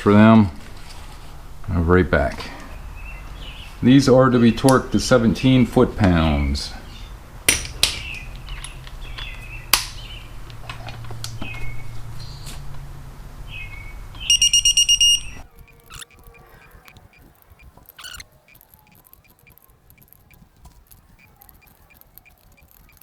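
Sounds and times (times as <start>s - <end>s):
sharp clicks: 14.3s - 23.0s
torque wrench rapid beeps: 14.3s - 23.0s.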